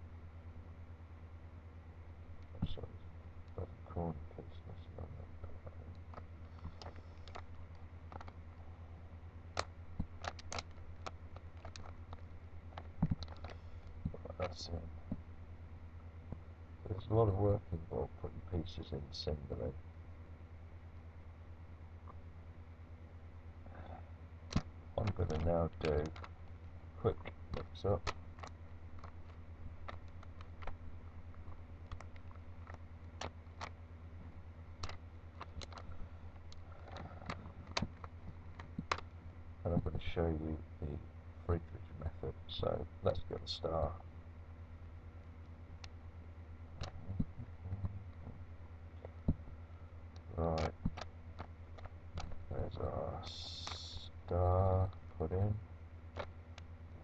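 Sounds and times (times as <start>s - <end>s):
steady low hum: 0.0s - 57.0s
puzzle cube clicking: 50.4s - 52.4s.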